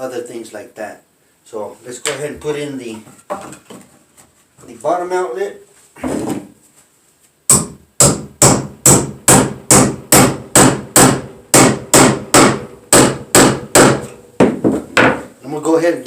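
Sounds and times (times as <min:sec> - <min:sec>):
hammer striking nails: 0:07.5 - 0:15.2.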